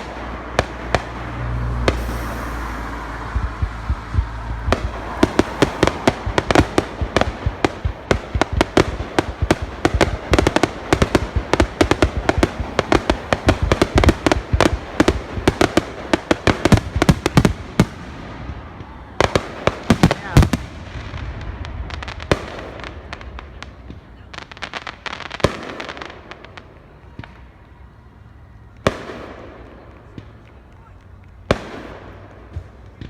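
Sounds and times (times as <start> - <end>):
low rumble: 0.0 - 15.6
fireworks bangs and crackles: 0.0 - 33.0.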